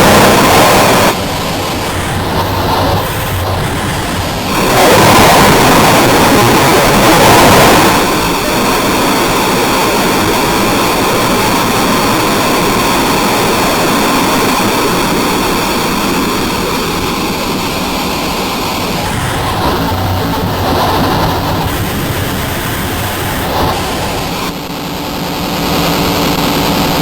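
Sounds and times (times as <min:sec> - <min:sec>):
loud static-like rushing noise: 0:00.0 - 0:27.0.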